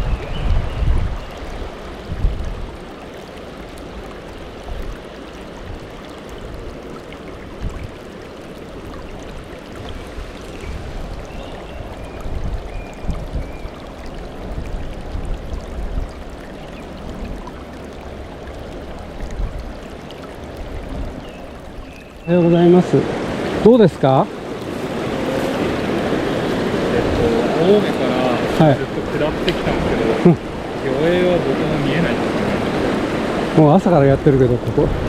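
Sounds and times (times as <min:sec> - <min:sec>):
mountain stream water rushing: 0:00.0 - 0:35.0.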